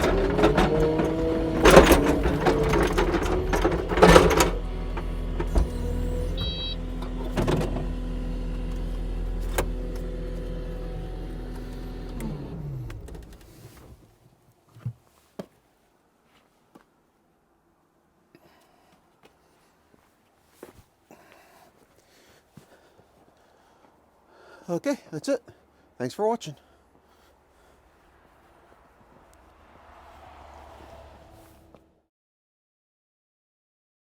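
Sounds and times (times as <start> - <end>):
loud clanks: 0.0 - 7.8
diesel engine running: 0.0 - 14.0, 27.1 - 32.0
engine winding down: 0.0 - 14.0, 28.2 - 32.0.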